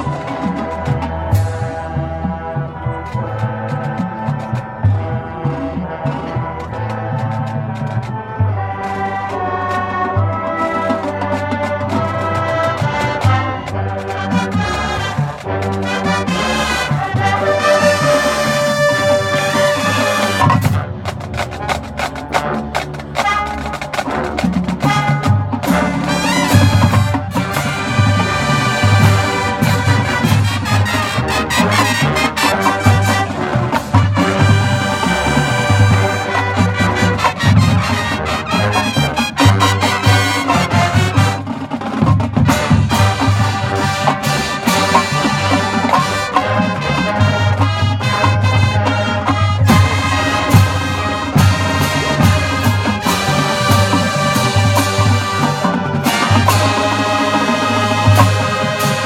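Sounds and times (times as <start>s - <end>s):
brass sustained notes: 0.0s - 59.0s
marching band playing: 0.0s - 59.0s
drumline rapid hits: 9.7s - 59.0s.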